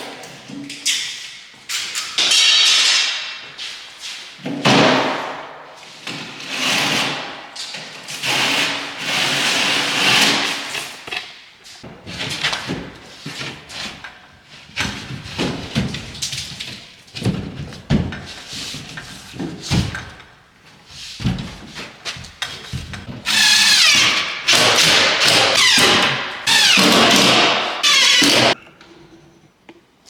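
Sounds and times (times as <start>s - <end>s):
scraping drywall: 6.0s - 11.0s, 22.6s - 28.6s.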